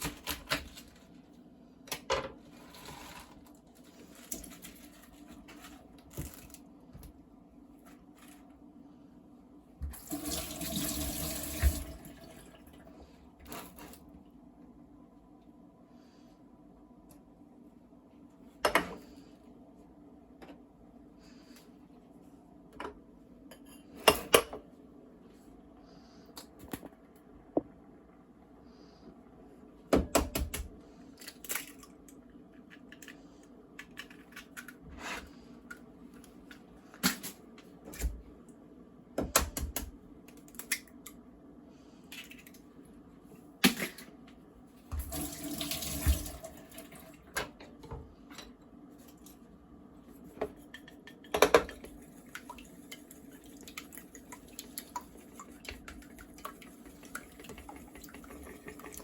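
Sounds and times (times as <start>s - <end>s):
water running from tap: 9.9s - 12.6s, 45.0s - 47.0s, 52.3s - 59.0s.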